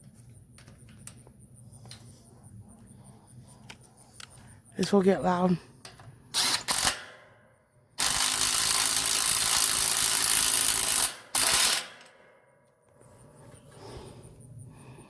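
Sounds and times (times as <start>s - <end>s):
power tool bursts: 6.3s - 7.3s, 8.0s - 12.3s.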